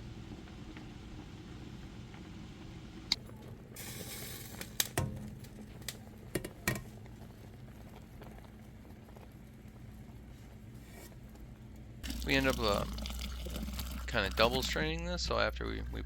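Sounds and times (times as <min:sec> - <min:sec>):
steady low hum: 0:06.9 - 0:16.0.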